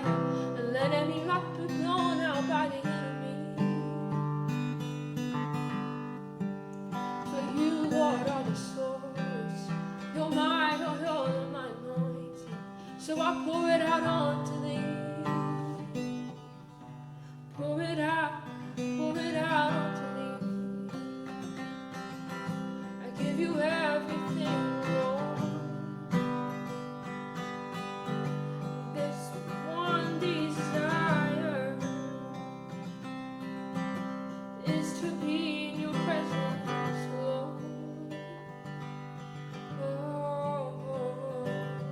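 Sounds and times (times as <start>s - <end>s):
person singing wordless phrases: 0.0s - 4.1s, 7.2s - 16.0s, 17.5s - 21.1s, 23.0s - 25.8s, 28.9s - 32.1s, 34.6s - 38.5s, 39.7s - 41.9s
acoustic guitar strumming: 0.0s - 41.9s.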